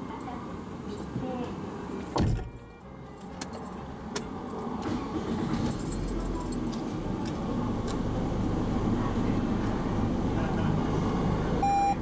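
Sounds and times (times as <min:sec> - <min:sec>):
car engine rumbling: 0:03.5 - 0:12.0.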